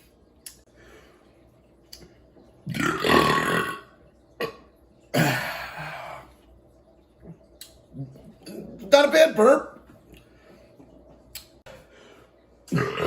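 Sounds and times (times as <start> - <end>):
man burping: 2.7 - 6.3, 12.7 - 13.0.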